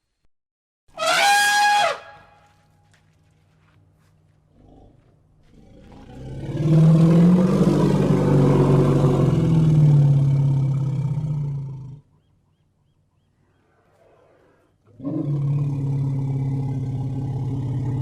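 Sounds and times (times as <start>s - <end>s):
elephant calling: 1.0s - 2.4s.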